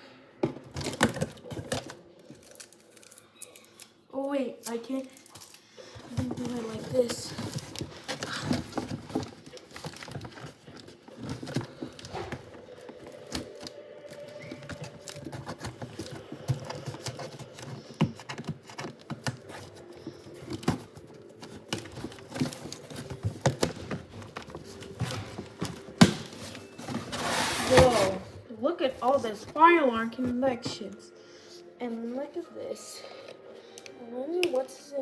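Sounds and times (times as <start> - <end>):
cardboard box being handled: 6.1 - 30.4.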